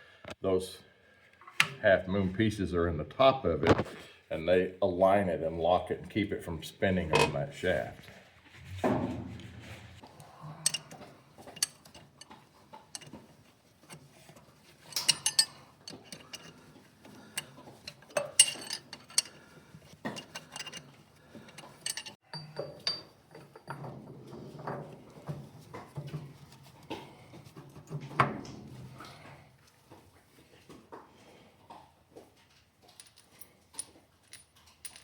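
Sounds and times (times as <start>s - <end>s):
steel tools clinking and clanking: 7.1s - 7.4s, 10.6s - 25.3s, 32.9s - 35.0s.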